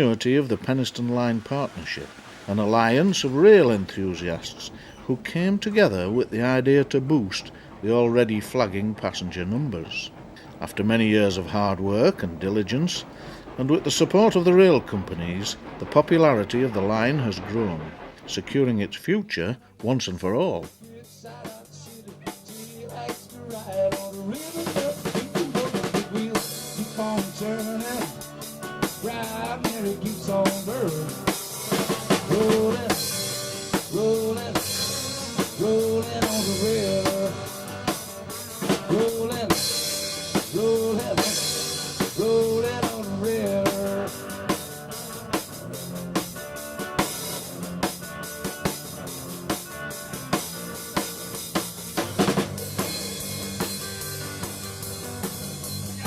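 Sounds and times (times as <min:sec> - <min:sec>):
drum kit beat: 0:19.6 - 0:56.0
instrumental band music: 0:20.6 - 0:56.0.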